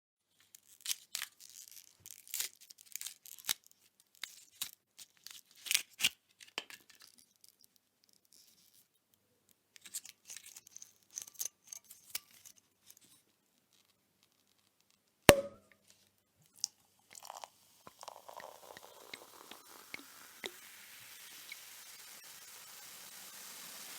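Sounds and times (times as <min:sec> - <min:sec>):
foil crackling and tearing: 0:00.5 - 0:03.6
cork pop: 0:15.3 - 0:15.7
champagne fizzing hiss: 0:17.1 - 0:23.9.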